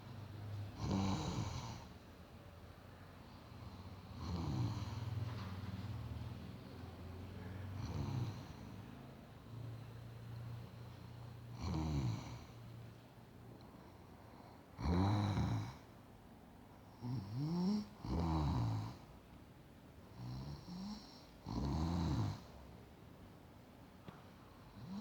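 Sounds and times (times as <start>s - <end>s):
woman snoring: 0.8s - 1.9s, 3.8s - 5.3s, 7.7s - 8.8s, 11.6s - 12.6s, 14.8s - 15.8s, 17.0s - 19.0s, 20.2s - 22.5s.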